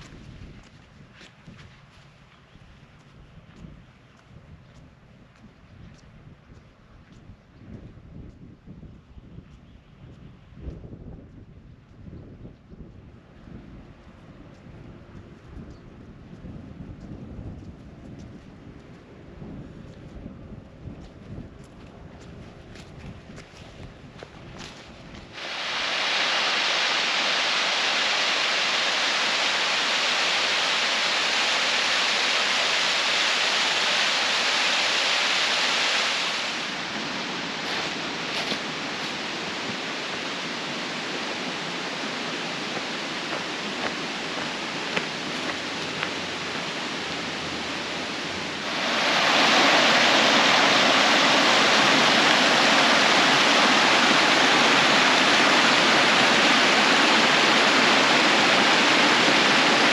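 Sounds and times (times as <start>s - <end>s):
rushing water: 25.2s - 59.9s.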